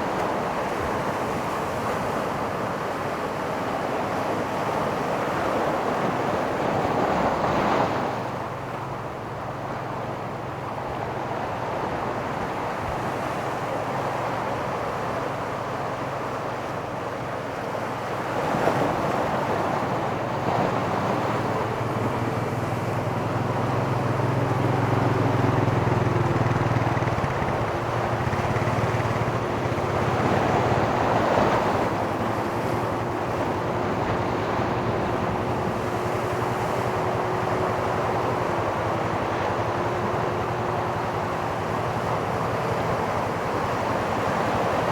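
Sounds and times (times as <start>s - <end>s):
steady engine hum: 0.0s - 44.9s
surf breaking on beach: 18.2s - 44.9s.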